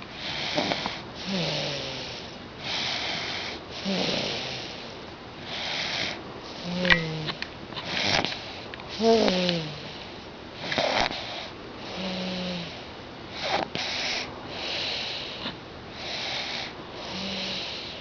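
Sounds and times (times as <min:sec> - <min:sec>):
nasal snoring: 0:00.2 - 0:04.8, 0:10.6 - 0:12.8, 0:16.0 - 0:18.0.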